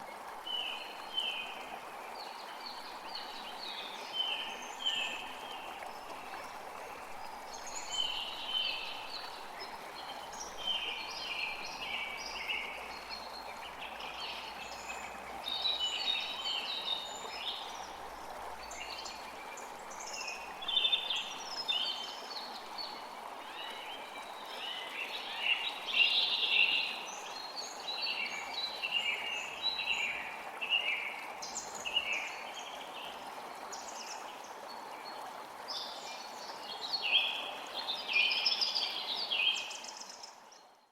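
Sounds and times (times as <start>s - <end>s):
creek water rushing: 0.0s - 40.8s.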